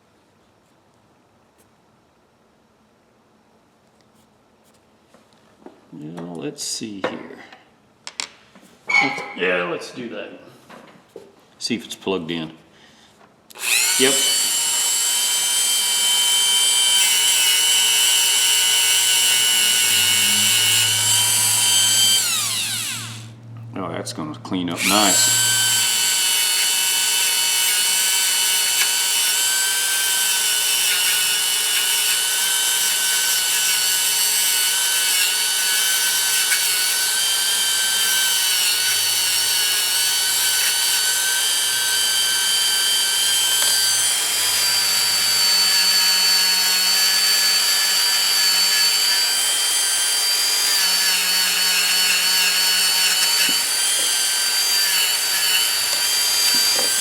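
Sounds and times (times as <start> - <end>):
rotary tool grinding metal: 13.6 - 23.3, 24.8 - 57.0.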